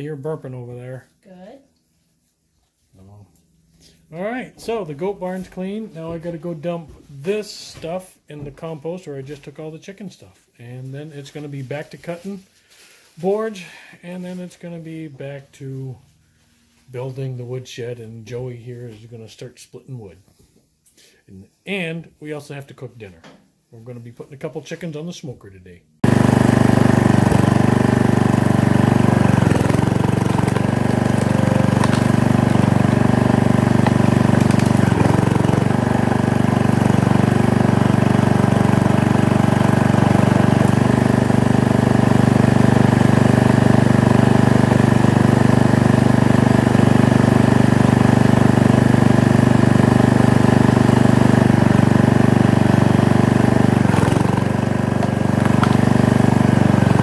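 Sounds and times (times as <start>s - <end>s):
small gasoline engine running: 26.0s - 57.0s.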